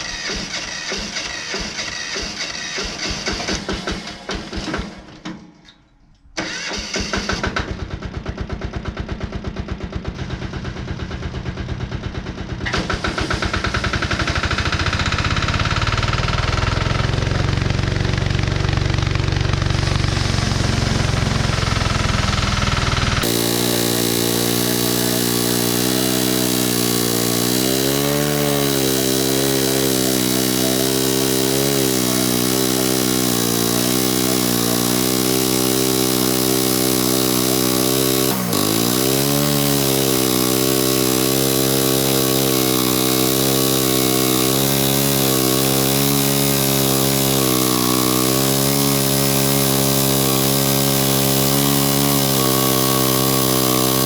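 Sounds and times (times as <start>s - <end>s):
band blade cutting log: 0.0s - 5.0s, 12.6s - 54.0s
sawmill engine running: 0.0s - 5.2s, 6.4s - 54.0s.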